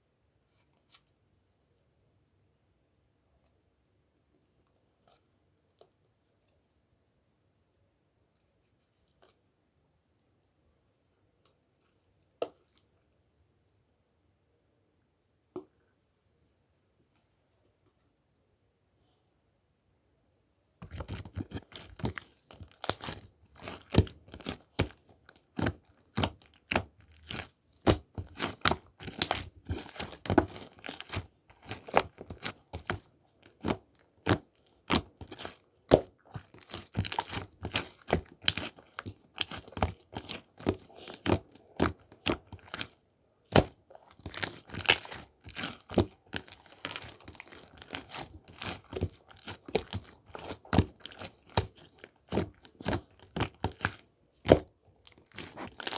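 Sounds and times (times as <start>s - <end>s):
crinkling and tearing: 20.8s - 55.9s.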